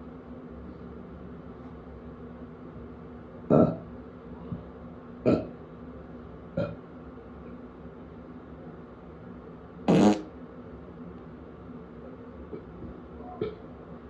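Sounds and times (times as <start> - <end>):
person farting: 9.9 - 10.3.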